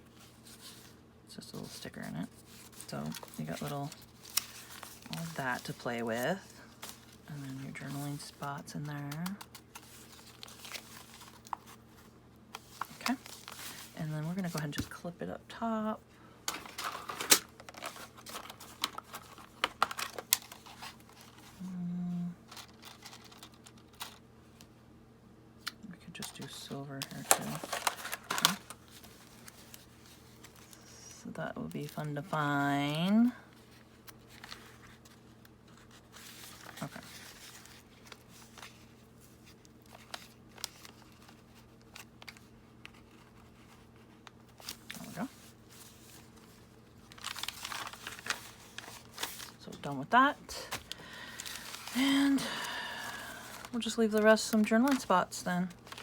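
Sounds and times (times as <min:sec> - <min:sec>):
paper rustling and crinkling: 0:00.0 - 0:01.0, 0:01.6 - 0:15.0, 0:16.5 - 0:21.6, 0:22.4 - 0:24.7, 0:26.2 - 0:56.0
low hummed voice: 0:21.5 - 0:22.6.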